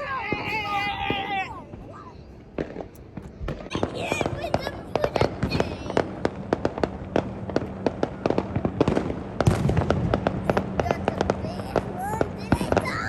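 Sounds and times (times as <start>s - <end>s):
fireworks bangs and cracks: 0.0s - 13.0s.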